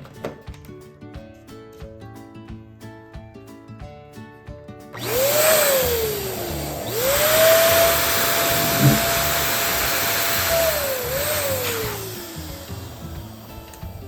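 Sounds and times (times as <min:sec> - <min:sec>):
electric balloon inflator motor whine: 0:05.0 - 0:14.0.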